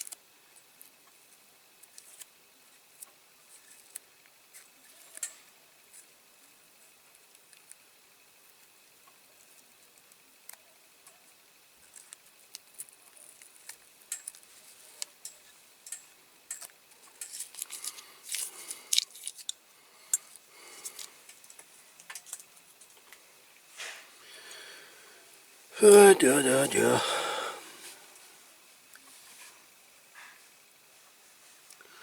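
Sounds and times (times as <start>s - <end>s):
tape rustling scrapes: 17.2s - 19.5s.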